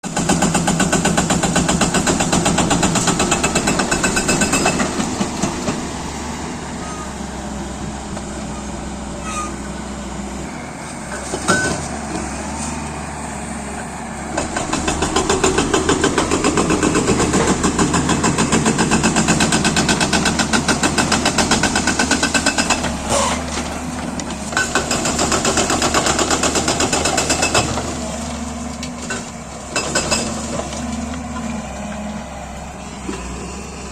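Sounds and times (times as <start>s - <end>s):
diesel engine running: 0.0s - 33.9s
hydraulic breaker hammering: 0.2s - 5.8s.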